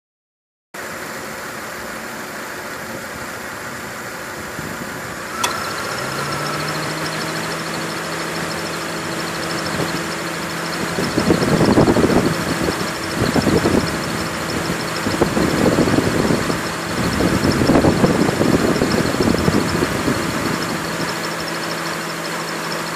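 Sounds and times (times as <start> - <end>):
car engine idling: 0.9 - 22.9
belt whine and chirping squeak: 5.2 - 22.9
compressor clutch click: 5.3 - 21.4.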